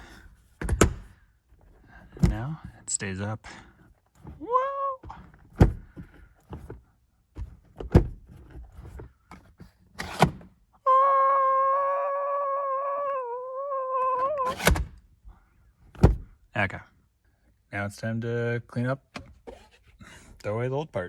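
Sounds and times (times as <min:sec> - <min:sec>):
sun visor thunks: 0:00.6 - 0:01.2, 0:05.5 - 0:06.7, 0:15.9 - 0:16.4.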